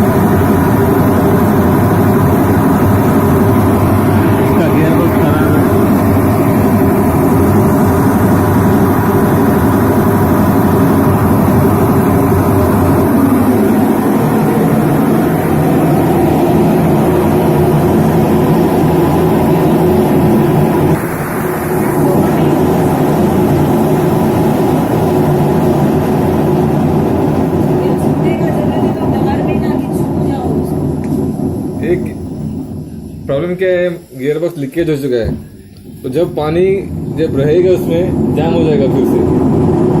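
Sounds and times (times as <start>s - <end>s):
washing machine spinning: 0.0s - 40.0s.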